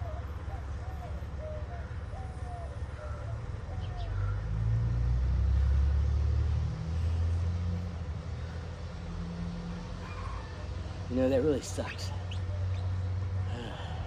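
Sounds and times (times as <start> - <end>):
birds chirping: 0.0 - 4.8, 9.7 - 14.0
vehicle engine rumble passing: 0.0 - 14.0.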